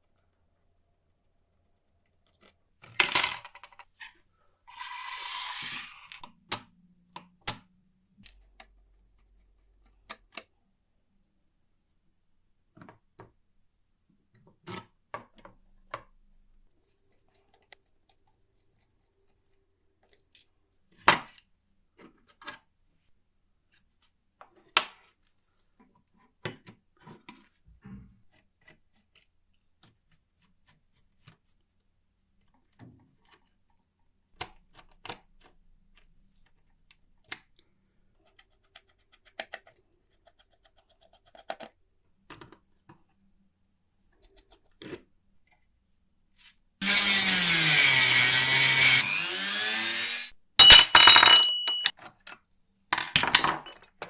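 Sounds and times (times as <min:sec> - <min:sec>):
small metal parts clicking: 0:08.2 - 0:08.7.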